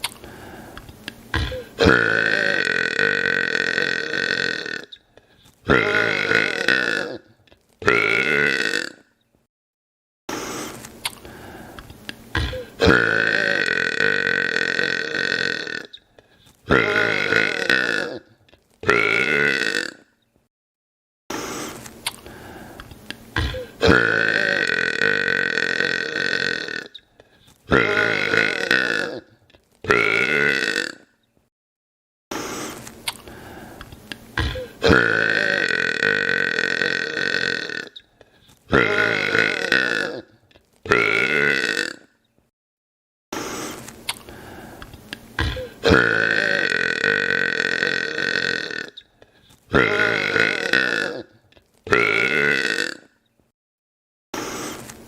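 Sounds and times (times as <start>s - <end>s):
man burping: 1.3s - 5.0s, 5.6s - 9.2s, 12.3s - 16.0s, 16.7s - 20.1s, 23.4s - 27.0s, 27.7s - 31.1s, 34.4s - 38.0s, 38.7s - 42.2s, 45.4s - 49.0s, 49.7s - 53.2s
man belching loudly: 1.4s - 4.9s, 5.7s - 9.1s, 12.4s - 16.0s, 16.7s - 20.1s, 23.4s - 27.0s, 27.7s - 29.3s, 29.9s - 31.1s, 34.4s - 38.0s, 38.7s - 40.3s, 40.9s - 42.1s, 45.4s - 49.0s, 49.7s - 53.1s.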